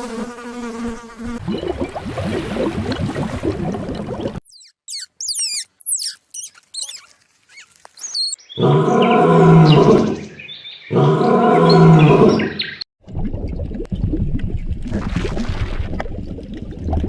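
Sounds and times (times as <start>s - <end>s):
birds chirping and whistling: 4.4s - 12.8s
loud low animal calls: 8.6s - 10.3s, 10.9s - 12.7s.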